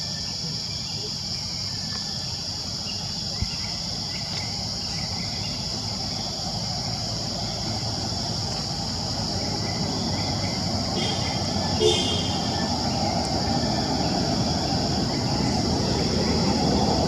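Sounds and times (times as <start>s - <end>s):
high insect drone: 0.0s - 17.0s.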